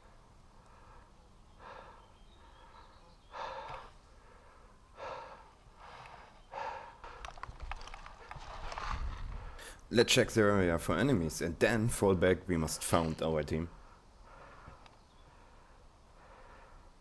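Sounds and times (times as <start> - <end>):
person breathing hard: 0.0 - 8.4, 9.2 - 9.9, 13.8 - 17.0.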